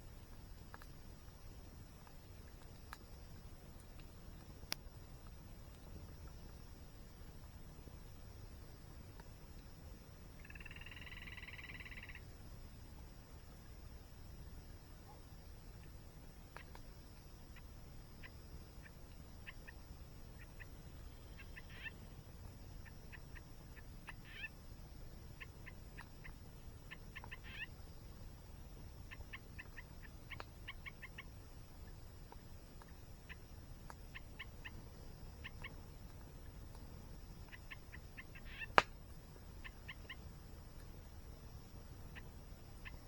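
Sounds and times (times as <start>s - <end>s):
campfire crackling: 0.0s - 43.0s
loud sharp fire snap: 38.7s - 39.1s.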